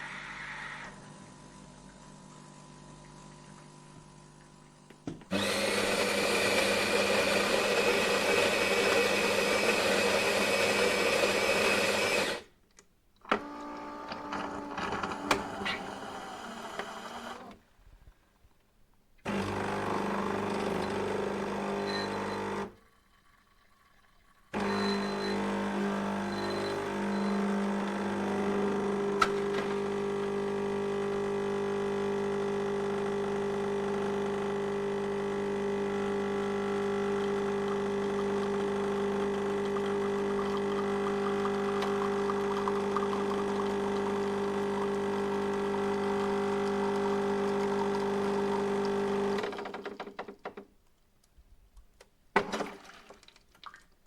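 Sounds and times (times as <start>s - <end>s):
coffee grinder motor running: 5.3s - 12.5s, 19.3s - 22.7s, 24.5s - 49.5s.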